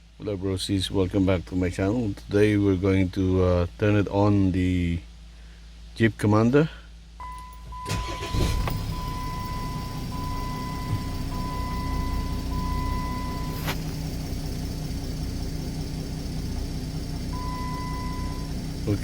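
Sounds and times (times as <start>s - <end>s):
dashboard warning chime beeping: 7.2s - 13.9s, 17.3s - 19.0s
diesel engine starting and idling: 7.2s - 19.0s.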